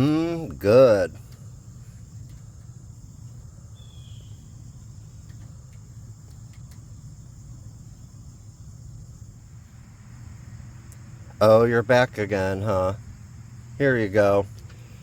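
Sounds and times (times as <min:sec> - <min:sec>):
insect chorus chirring: 0:00.0 - 0:15.0
low steady hum: 0:00.0 - 0:15.0
faint chirp: 0:01.4 - 0:08.2
faint clicks: 0:05.2 - 0:06.9.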